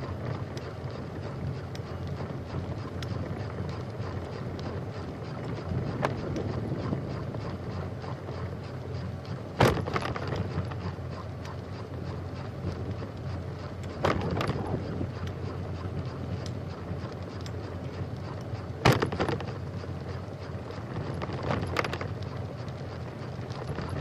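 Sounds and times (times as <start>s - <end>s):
bicycle tyres rumbling: 0.0s - 24.0s
wind on microphone: 14.0s - 15.2s.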